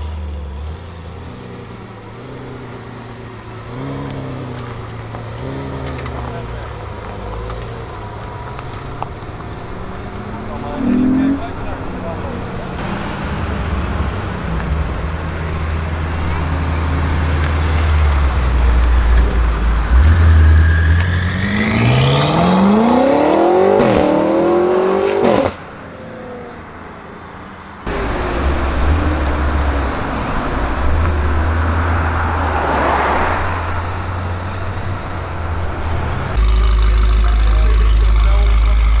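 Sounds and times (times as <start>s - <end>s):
car engine revving: 0.0s - 26.6s, 27.8s - 39.0s.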